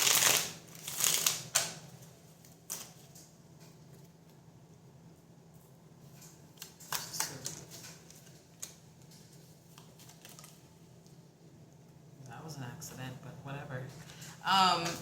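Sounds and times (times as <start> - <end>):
cards shuffling: 0.0 - 1.8.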